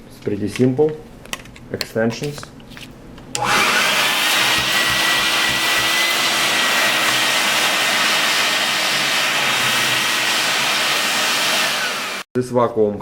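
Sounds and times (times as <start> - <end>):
shop vacuum running: 3.4 - 12.3.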